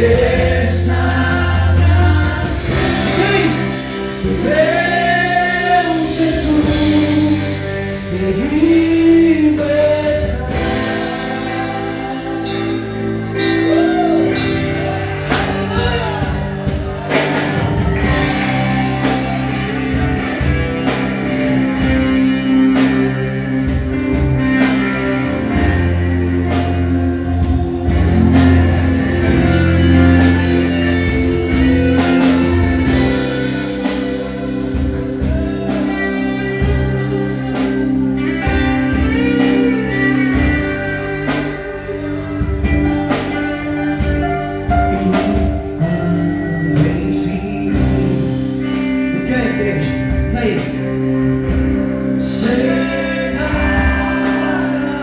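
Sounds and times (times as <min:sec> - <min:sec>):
drum kit beat: 0:00.0 - 0:55.0
guitar chords: 0:00.0 - 0:55.0.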